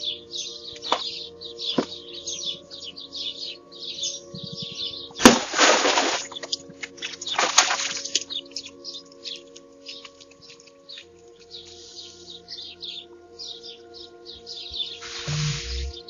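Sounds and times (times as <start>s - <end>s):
small birds chirping: 0.0s - 16.0s
sharp crack: 5.2s - 6.4s.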